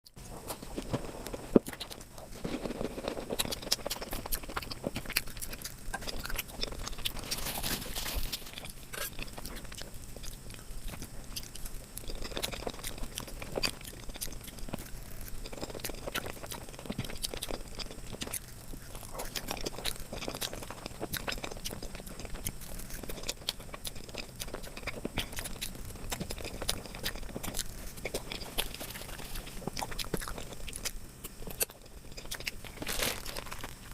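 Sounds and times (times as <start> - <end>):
person crunching sweets: 0.1 - 33.9.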